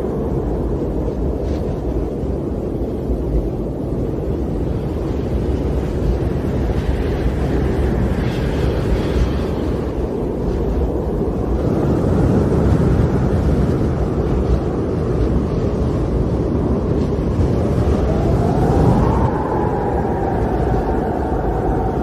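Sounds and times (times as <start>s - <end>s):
wind blowing with low roar: 0.0s - 22.0s
faint howling whistle: 17.6s - 22.0s.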